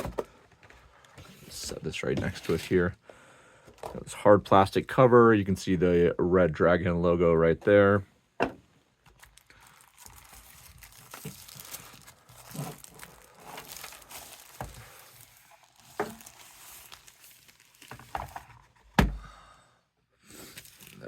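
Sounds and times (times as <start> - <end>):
plastic packaging crinkling: 9.0 - 18.6, 20.4 - 21.0.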